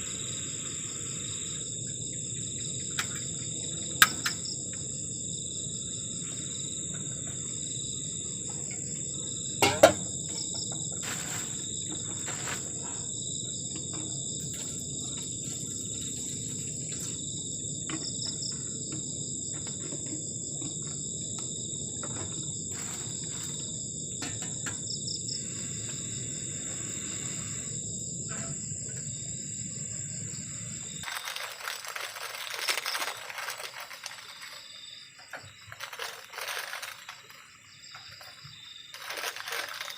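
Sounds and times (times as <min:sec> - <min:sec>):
crickets trilling: 0:00.0 - 0:39.9
broad hiss: 0:25.4 - 0:27.8.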